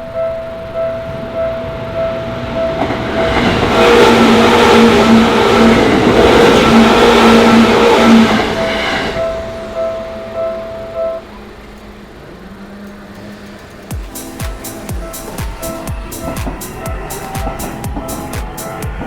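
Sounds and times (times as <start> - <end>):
train wheels on rails: 0.0 - 19.0
level crossing bell ringing: 13.9 - 19.0.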